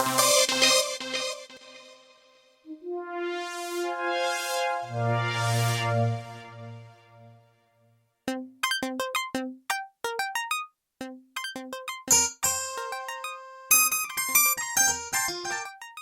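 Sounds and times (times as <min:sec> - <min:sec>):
keyboard playing notes and chords: 0:00.0 - 0:01.5, 0:02.7 - 0:07.4, 0:08.3 - 0:16.0.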